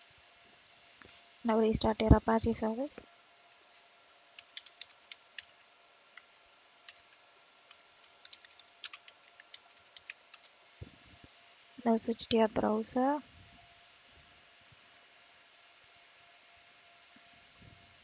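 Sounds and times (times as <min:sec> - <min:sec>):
faint keyboard typing: 0:03.5 - 0:10.6.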